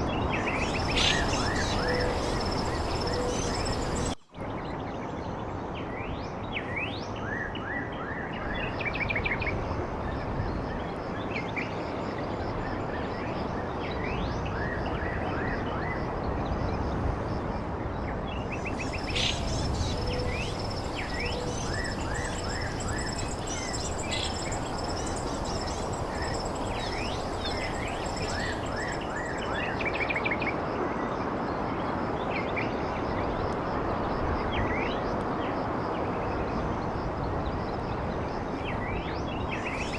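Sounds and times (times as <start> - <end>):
outdoor background noise: 0.0 - 39.9
birds chirping and trilling: 0.3 - 5.0, 18.5 - 29.8, 39.2 - 39.9.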